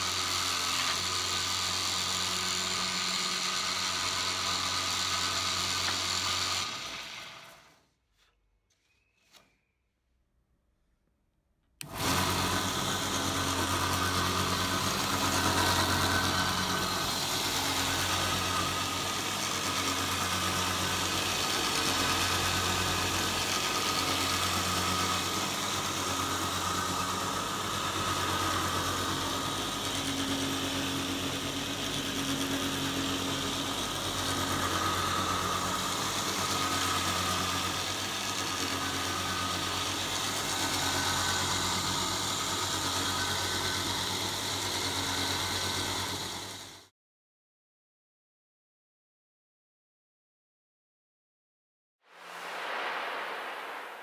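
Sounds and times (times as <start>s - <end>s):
belt grinder motor humming: 0.0s - 7.7s, 11.8s - 46.8s.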